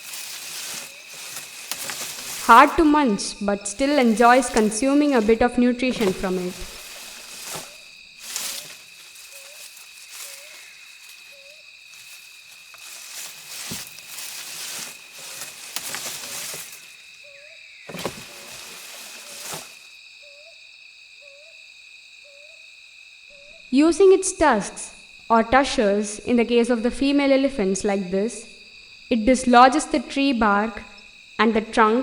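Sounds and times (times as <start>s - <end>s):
elephant stripping and chewing bark: 0.0s - 17.1s, 17.9s - 19.9s
insects droning: 0.0s - 32.0s.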